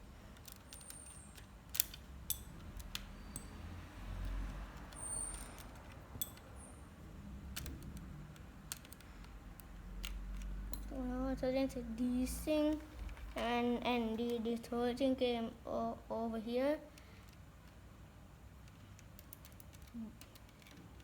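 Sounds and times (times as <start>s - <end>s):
low rumble of handling: 0.0s - 14.9s
plastic parts clicking and rattling: 0.2s - 3.6s, 4.2s - 6.6s, 7.4s - 10.9s, 18.5s - 21.0s.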